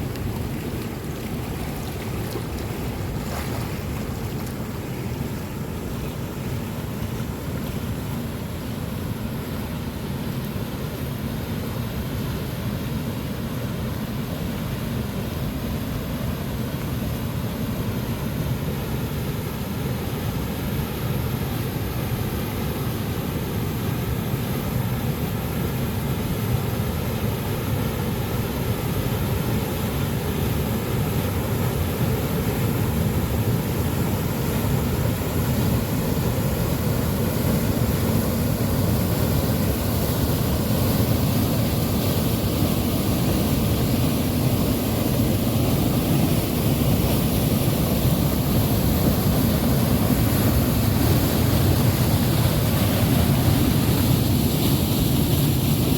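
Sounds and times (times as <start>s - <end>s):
waterfall rushing: 29.1s - 55.9s.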